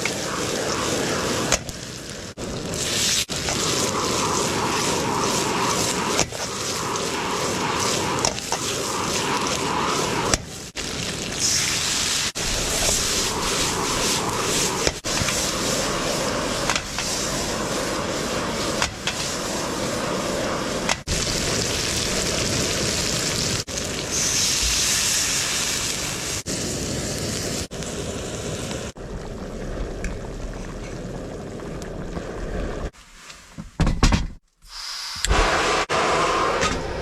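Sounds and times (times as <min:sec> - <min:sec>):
rain falling: 0:00.0 - 0:32.8.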